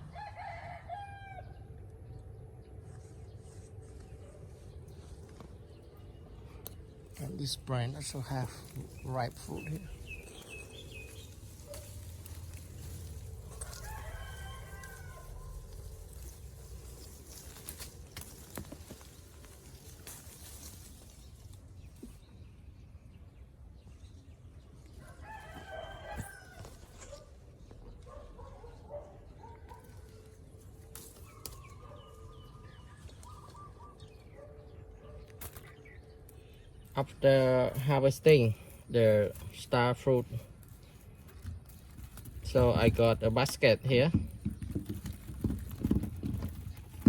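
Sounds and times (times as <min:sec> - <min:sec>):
rooster crowing: 0:00.0 - 0:01.7, 0:13.5 - 0:15.9, 0:25.0 - 0:27.0
birds chirping: 0:00.0 - 0:47.0
steady low rumble: 0:01.6 - 0:23.8.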